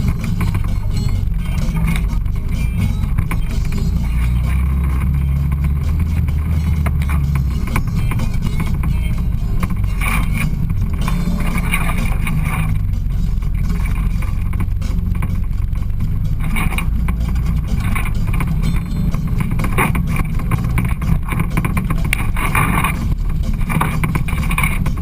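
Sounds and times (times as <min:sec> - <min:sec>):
knocks and rattles over bumps: 0:00.0 - 0:25.0
utility vehicle engine running: 0:00.0 - 0:25.0.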